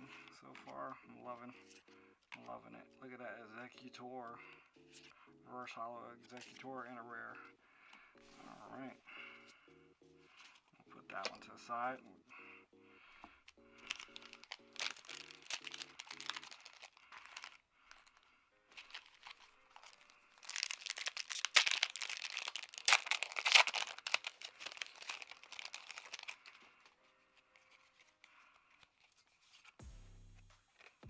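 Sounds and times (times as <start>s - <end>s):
soft background music: 0.0s - 31.0s
foil wrapper crinkling and tearing: 13.0s - 29.8s.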